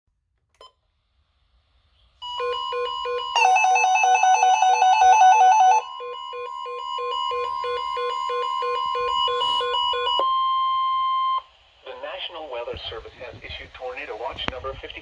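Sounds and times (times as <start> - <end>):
steady high tone: 2.2 - 11.0
pulsed electronic beeps: 5.8 - 11.4.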